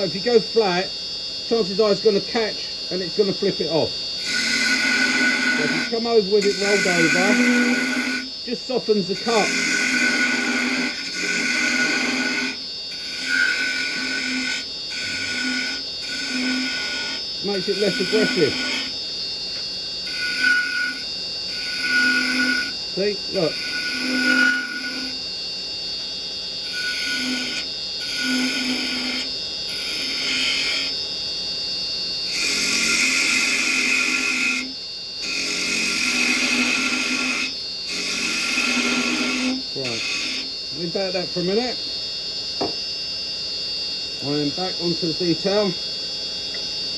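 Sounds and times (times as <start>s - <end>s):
motor whine: 0.0s - 46.9s
chisel cutting wood on lathe: 4.2s - 18.9s, 20.0s - 25.2s, 26.6s - 30.9s, 32.3s - 41.1s.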